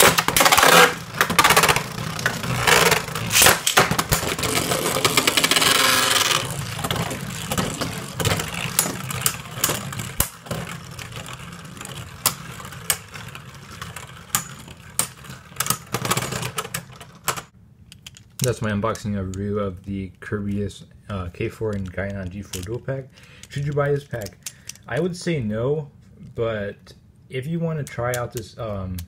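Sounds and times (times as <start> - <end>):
spinning tops grinding: 0.0 - 17.3
spinning tops clacking together: 0.0 - 18.5.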